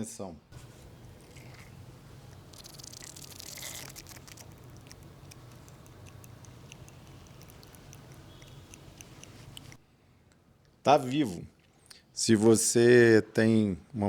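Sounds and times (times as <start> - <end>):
low steady hum: 0.3 - 12.2
faint small clicks and ticks: 2.5 - 10.8.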